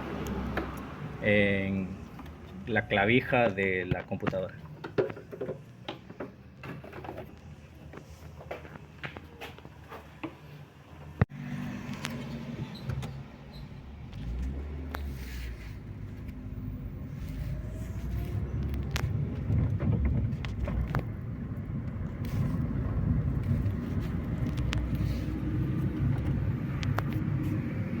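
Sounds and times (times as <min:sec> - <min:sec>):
car engine rumbling: 0:11.0 - 0:28.0.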